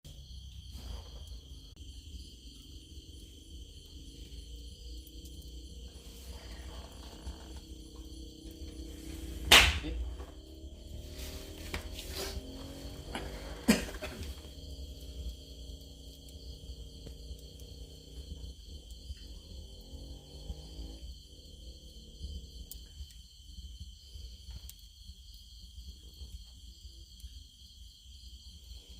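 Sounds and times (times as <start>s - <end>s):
insects chirring: 0.1s - 28.9s
low rumble: 0.6s - 19.7s.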